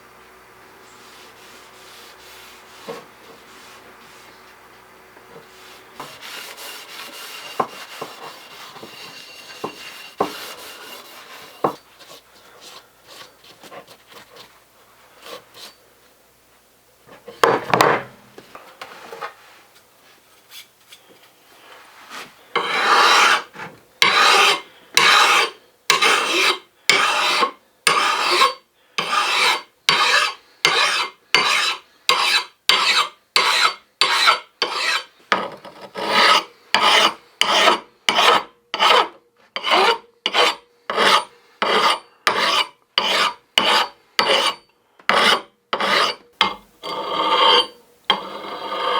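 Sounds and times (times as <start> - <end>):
hand file rubbing strokes: 0.9 - 4.6, 5.4 - 14.0, 22.0 - 35.1, 35.7 - 48.9.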